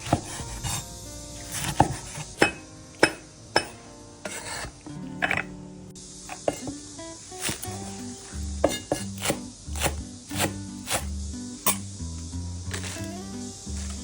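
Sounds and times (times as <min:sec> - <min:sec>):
background music: 0:00.0 - 0:14.0
kitchen utensils knocking: 0:01.6 - 0:05.5, 0:06.3 - 0:06.8, 0:08.6 - 0:10.5.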